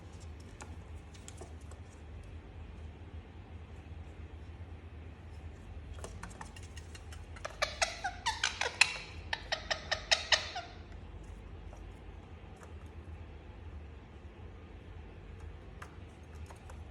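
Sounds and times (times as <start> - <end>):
parakeet squeaks and clicks: 6.3 - 11.0.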